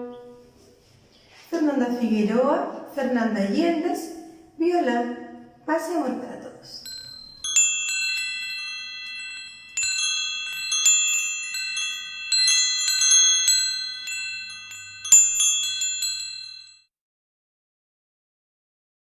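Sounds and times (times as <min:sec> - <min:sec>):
metallic chimes ringing: 0:06.8 - 0:16.9.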